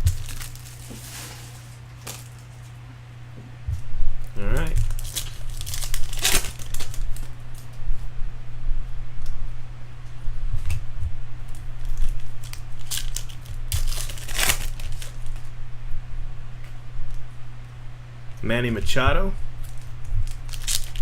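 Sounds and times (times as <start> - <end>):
wrapper tearing and crinkling: 0.0 - 2.7, 4.4 - 7.6, 11.8 - 15.5, 19.6 - 21.0
steady low hum: 0.0 - 21.0.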